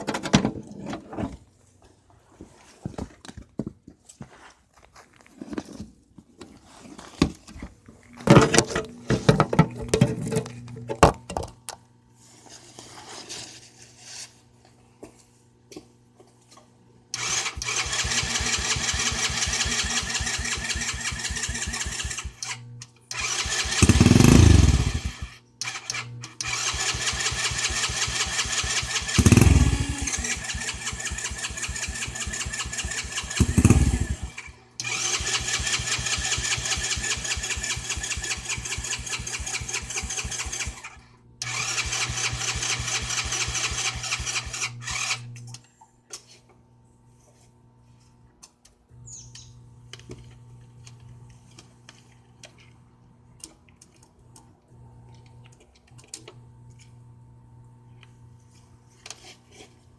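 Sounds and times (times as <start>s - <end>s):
four-wheeler engine running: 17.2s - 45.2s.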